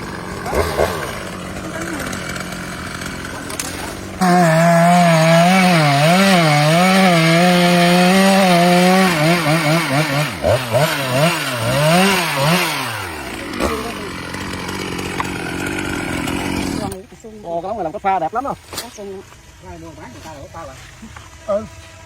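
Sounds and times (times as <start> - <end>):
chainsaw cutting wood: 0.0 - 17.0.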